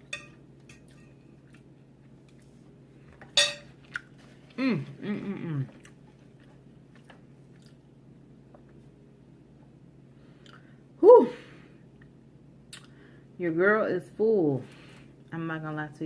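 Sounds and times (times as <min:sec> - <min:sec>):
sharp clink against a plate: 0:00.1 - 0:01.1, 0:03.4 - 0:03.7
chewing and mouth clicks: 0:05.7 - 0:07.9.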